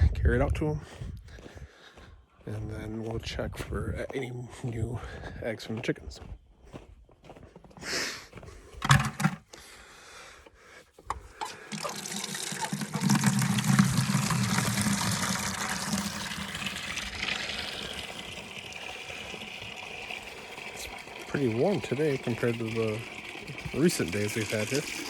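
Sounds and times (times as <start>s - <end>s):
bucket and tap clattering: 8.8s - 9.4s, 11.1s - 25.0s
water running into bucket: 11.4s - 25.0s.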